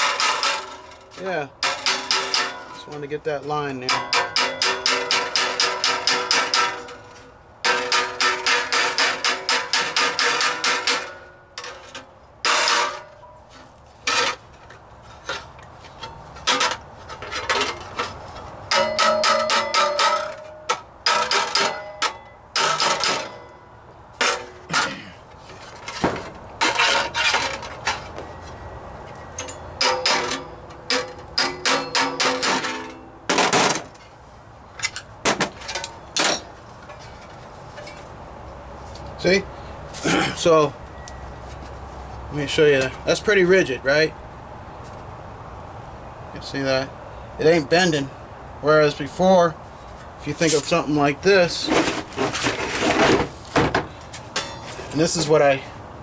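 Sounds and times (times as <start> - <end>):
hammer striking sheet steel: 1.6 - 2.9, 3.8 - 11.4, 18.7 - 23.6, 29.8 - 33.9.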